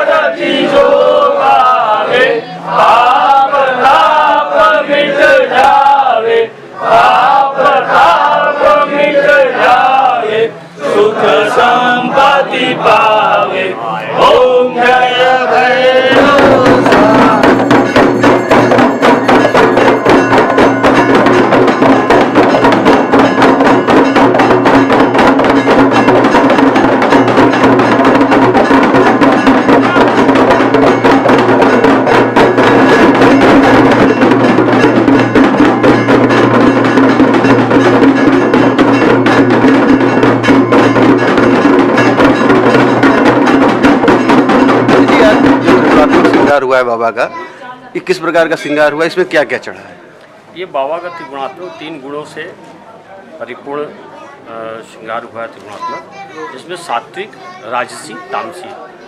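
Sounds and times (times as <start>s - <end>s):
drums beating fast: 0.0s - 47.3s
bells ringing: 15.7s - 46.6s.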